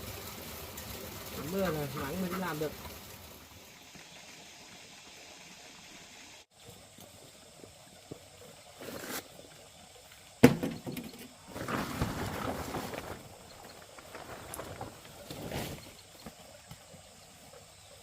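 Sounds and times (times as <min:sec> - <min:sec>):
rain falling: 0:00.0 - 0:03.8, 0:10.4 - 0:16.8.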